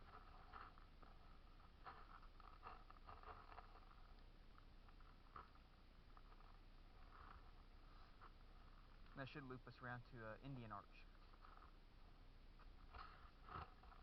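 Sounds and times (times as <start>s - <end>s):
soft rustles or scuffs: 4.9s - 9.2s.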